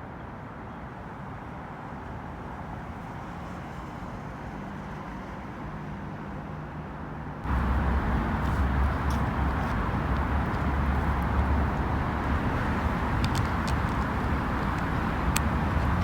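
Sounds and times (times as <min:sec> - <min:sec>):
city traffic rumble: 0:07.3 - 0:16.0.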